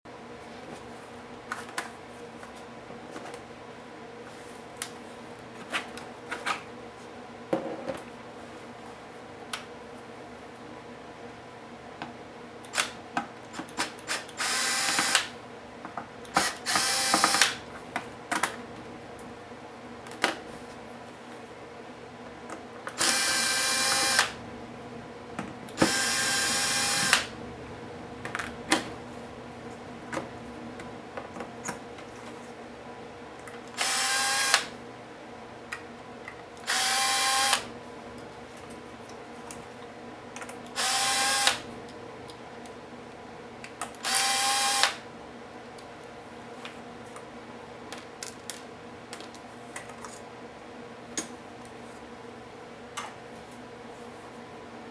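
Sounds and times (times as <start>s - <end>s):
electric screwdriver whining: 14.1s - 15.3s, 16.3s - 17.6s, 23.0s - 24.4s, 25.8s - 27.3s, 33.8s - 34.7s, 36.6s - 37.7s, 40.8s - 41.6s, 44.0s - 45.0s.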